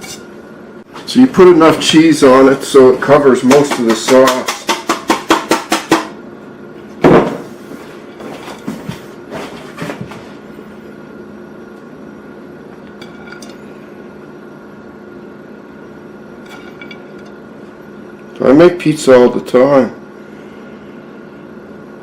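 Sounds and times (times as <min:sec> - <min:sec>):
steady low hum: 0:00.0 - 0:22.0
loud knock: 0:07.0 - 0:07.5.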